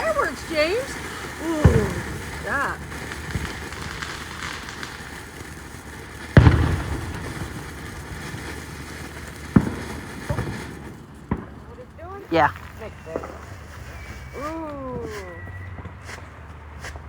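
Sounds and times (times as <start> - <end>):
fireworks bangs: 0.0 - 16.8
small firework pop: 6.3 - 7.7.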